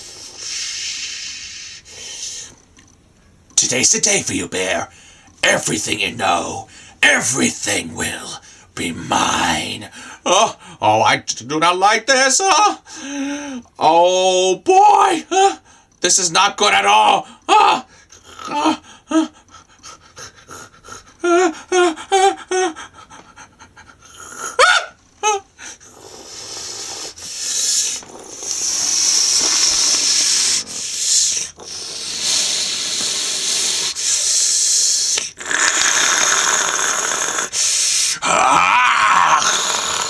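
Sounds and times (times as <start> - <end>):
person hissing and panting: 0.0 - 2.6, 17.2 - 24.8, 25.5 - 40.0
person making vocal sounds: 3.6 - 11.2, 14.7 - 15.6, 16.7 - 19.4, 20.2 - 22.9, 26.4 - 40.0.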